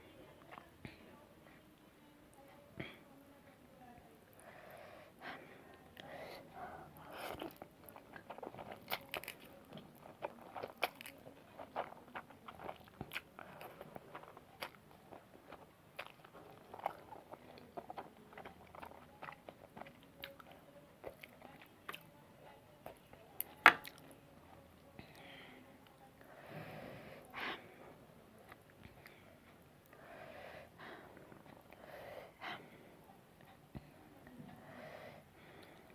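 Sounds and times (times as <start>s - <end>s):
person chewing noodles: 7.0s - 22.1s.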